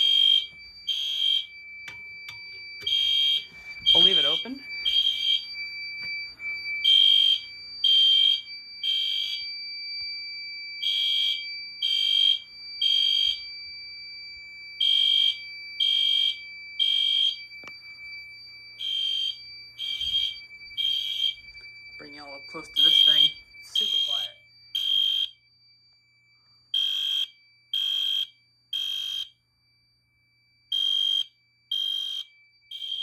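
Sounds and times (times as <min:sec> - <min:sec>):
faint steady high tone: 0:00.0 - 0:07.8, 0:13.4 - 0:26.7
fire alarm beeps: 0:00.0 - 0:33.0.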